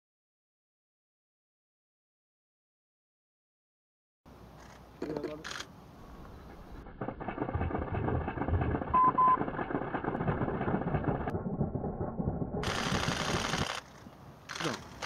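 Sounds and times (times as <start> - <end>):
short beeps: 8.9 - 9.4.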